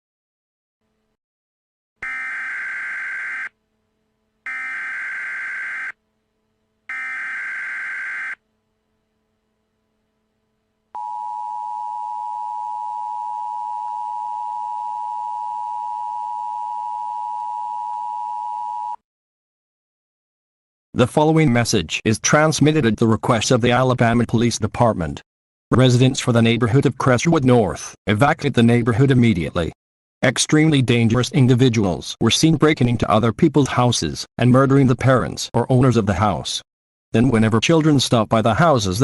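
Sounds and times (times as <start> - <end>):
two-tone alarm: 2.0 - 3.6, 4.5 - 6.0, 6.9 - 8.4, 11.0 - 19.0.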